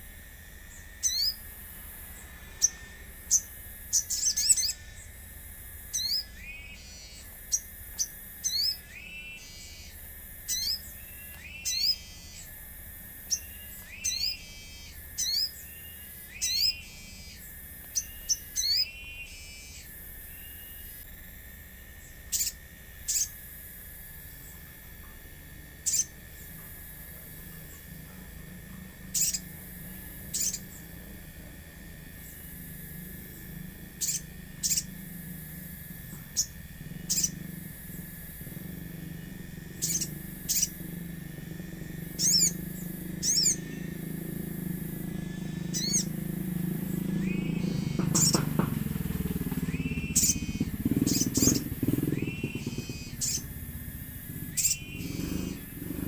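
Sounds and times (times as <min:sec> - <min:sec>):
low hum: 0:00.0 - 0:56.0
bird trills: 0:00.6 - 0:12.6, 0:13.2 - 0:21.1, 0:22.0 - 0:23.4, 0:25.8 - 0:31.2, 0:32.0 - 0:56.0
bird chirping: 0:00.7 - 0:01.5, 0:02.1 - 0:05.2, 0:05.9 - 0:12.5, 0:13.2 - 0:21.1, 0:22.0 - 0:23.4, 0:25.8 - 0:26.7, 0:29.1 - 0:31.0, 0:33.3 - 0:35.1, 0:36.1 - 0:41.1, 0:41.7 - 0:53.6, 0:54.5 - 0:56.0.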